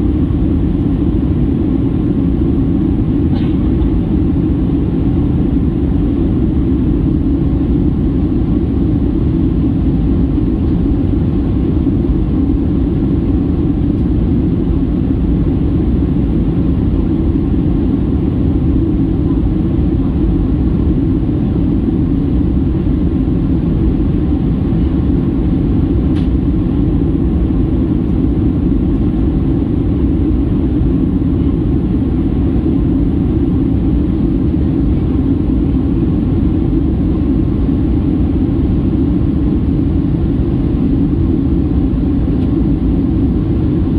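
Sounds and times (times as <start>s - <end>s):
airplane cabin drone: 0.0s - 43.9s.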